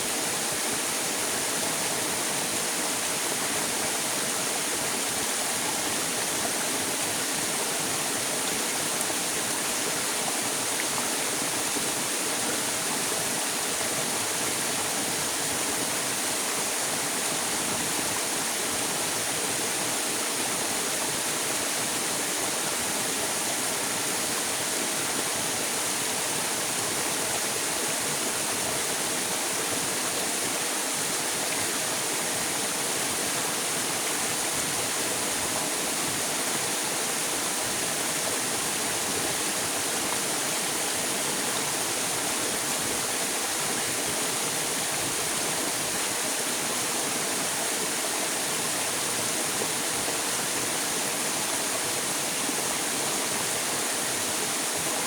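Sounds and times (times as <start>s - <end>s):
river water flowing: 0.0s - 55.0s.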